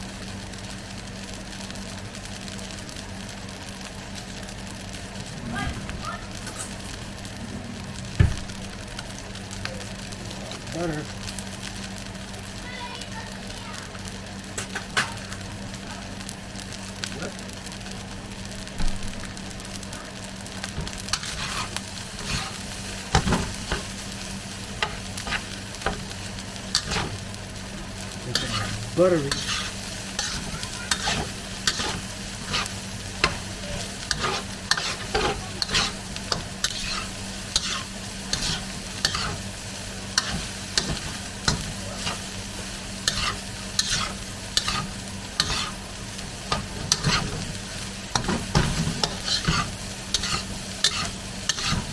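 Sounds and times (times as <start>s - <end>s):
fried rice sizzling in a pan: 0.0s - 51.9s
spatula scraping a pan: 21.1s - 27.3s, 27.9s - 39.5s, 40.1s - 51.9s.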